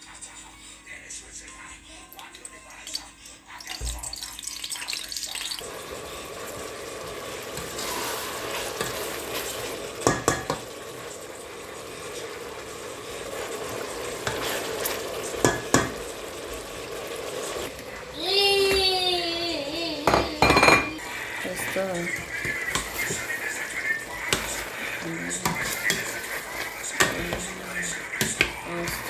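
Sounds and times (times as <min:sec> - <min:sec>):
food frying in hot oil: 0:02.7 - 0:29.0
utensil clinking against pot: 0:10.0 - 0:10.7, 0:20.0 - 0:21.2, 0:22.1 - 0:29.0.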